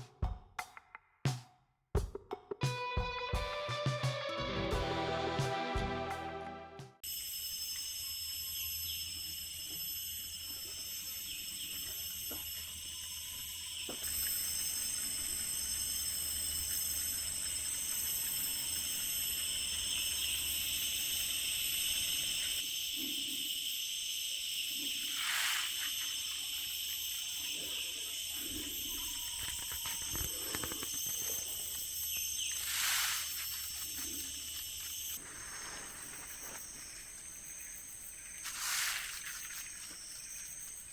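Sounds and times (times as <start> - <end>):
insects buzzing: 7.1 - 40.9
plant hissing rustle: 25.0 - 26.4, 32.4 - 36.9, 38.3 - 40.0.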